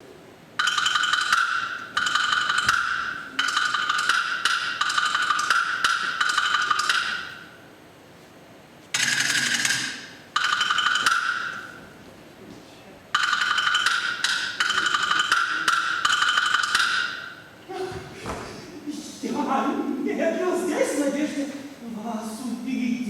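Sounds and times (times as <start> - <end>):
wooden percussion rolls: 0.6 - 7.6, 9.0 - 11.8, 13.1 - 17.5.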